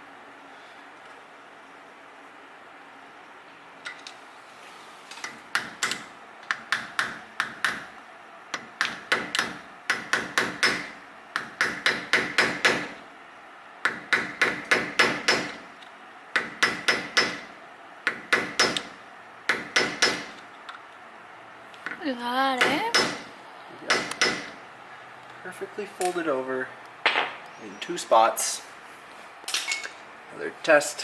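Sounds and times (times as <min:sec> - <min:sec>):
hammer tapping on metal: 0:05.5 - 0:07.9, 0:08.6 - 0:13.0, 0:13.8 - 0:15.6, 0:16.4 - 0:17.5, 0:18.1 - 0:20.4, 0:22.6 - 0:23.3, 0:23.9 - 0:24.6.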